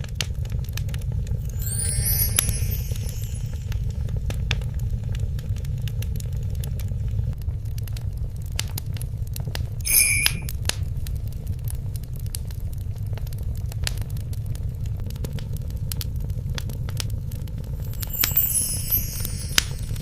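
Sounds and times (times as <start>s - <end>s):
fireplace fire crackling: 0.1s - 20.0s
bright ringing burst: 1.5s - 3.8s, 9.9s - 10.5s, 17.9s - 20.0s.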